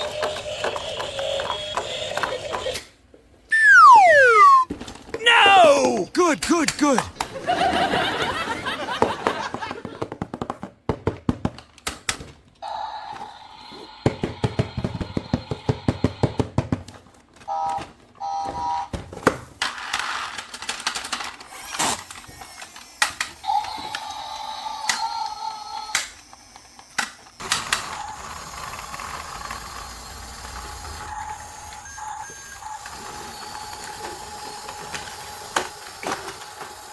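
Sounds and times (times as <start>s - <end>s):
plastic parts clicking and rattling: 19.6s - 22.2s.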